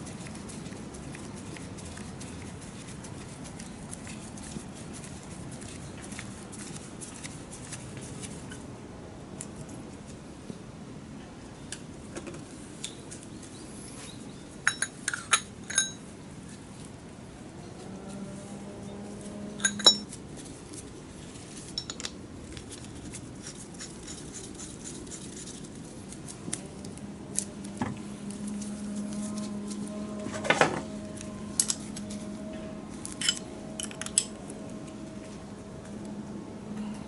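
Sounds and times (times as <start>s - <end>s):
steady low hum: 0.0s - 37.0s
metal tools clinking: 14.6s - 16.0s, 19.6s - 20.1s, 21.8s - 22.1s, 33.1s - 34.3s.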